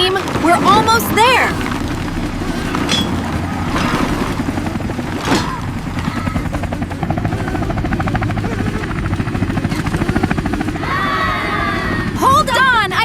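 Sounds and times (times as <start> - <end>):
helicopter rotor chop: 0.0 - 13.0.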